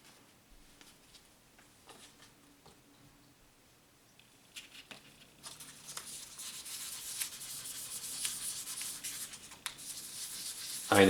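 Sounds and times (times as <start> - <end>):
sandpaper scratching metal: 6.0 - 11.0.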